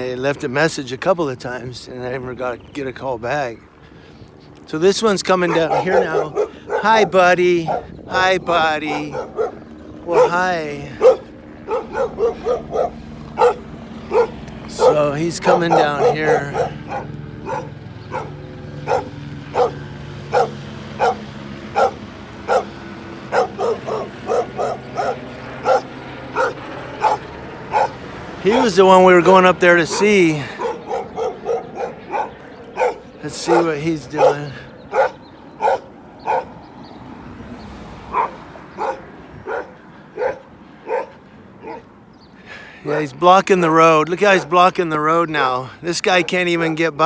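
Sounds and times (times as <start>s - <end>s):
dog barking: 5.4s - 8.2s, 8.8s - 28.8s, 29.8s - 36.6s, 38.1s - 41.9s.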